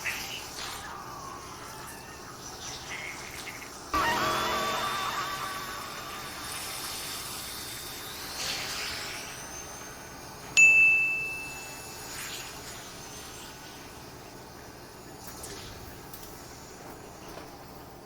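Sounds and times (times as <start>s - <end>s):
thin rising tone: 4.0s - 8.3s
bright ding: 10.6s - 12.1s.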